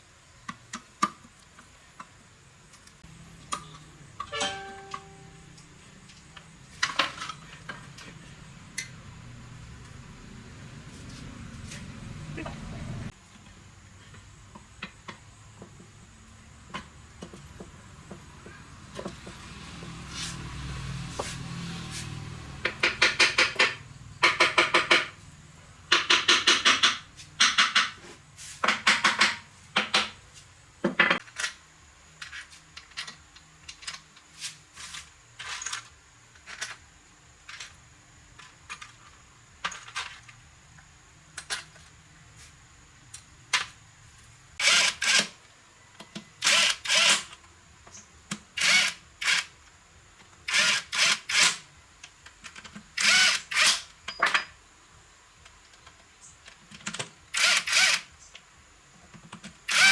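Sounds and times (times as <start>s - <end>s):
power drill rapid clicking: 44.6s - 45.3s, 46.4s - 47.3s, 48.6s - 49.5s, 50.5s - 51.6s, 53.0s - 53.9s, 57.3s - 58.1s, 59.7s - 59.9s.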